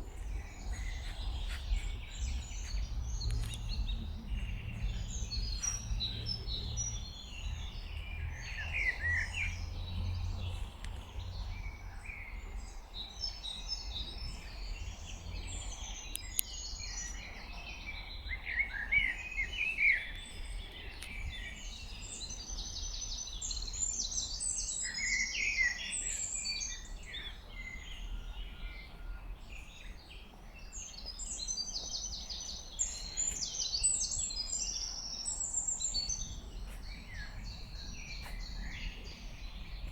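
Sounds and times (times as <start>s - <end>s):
steady low rumble: 0.0s - 8.4s
songbirds singing and calling: 0.0s - 39.9s.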